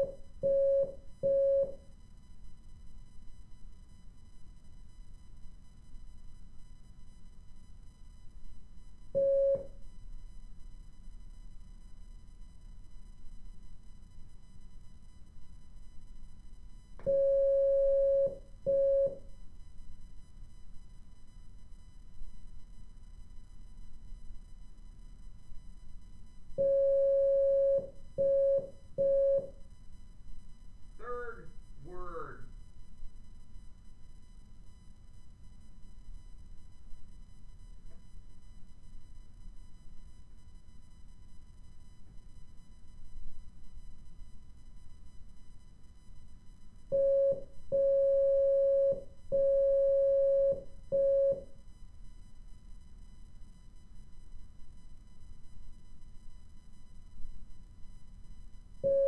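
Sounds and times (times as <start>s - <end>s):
morse code beeps: 0.0s - 1.8s, 17.1s - 19.3s, 26.6s - 29.6s, 31.0s - 32.4s, 46.9s - 51.5s.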